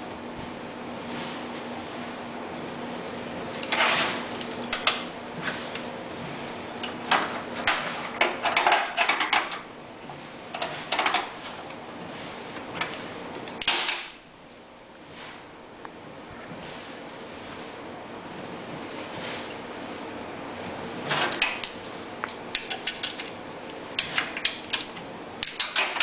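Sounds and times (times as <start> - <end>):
metal tools clicking and scraping: 22.6 - 26.0.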